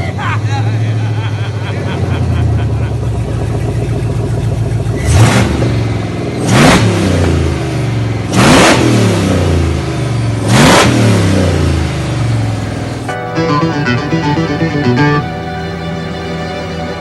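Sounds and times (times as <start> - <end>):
engine idling and revving: 3.0 - 12.9.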